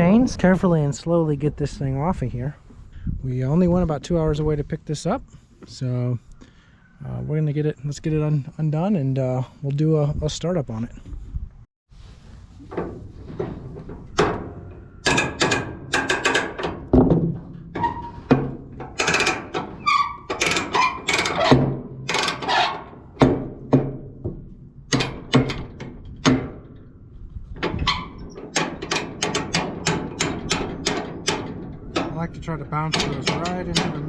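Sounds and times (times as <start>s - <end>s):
metal chains clanking: 18.9s - 22.8s.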